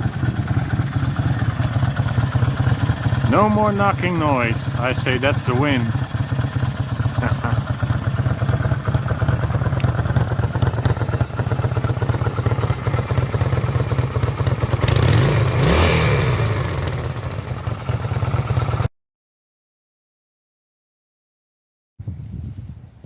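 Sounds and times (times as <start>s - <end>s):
motorcycle engine idling and revving: 0.0s - 18.9s
wind on microphone: 22.0s - 23.0s.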